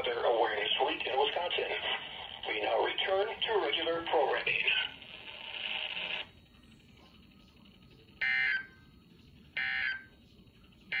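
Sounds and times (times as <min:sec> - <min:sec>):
radio hiss: 0:00.0 - 0:08.2.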